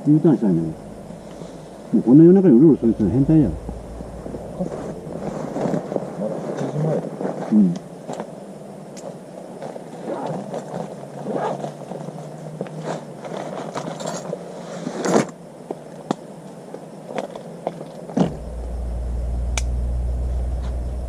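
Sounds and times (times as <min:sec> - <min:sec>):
car engine rumbling: 0:00.1 - 0:07.4, 0:18.2 - 0:21.0.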